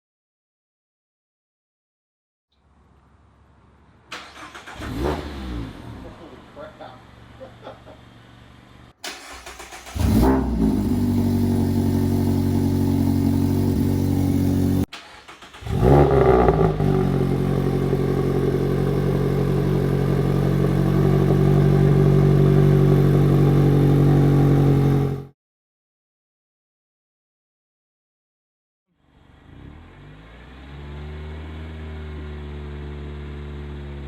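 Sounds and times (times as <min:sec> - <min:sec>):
car engine starting and idling: 0:02.7 - 0:25.3.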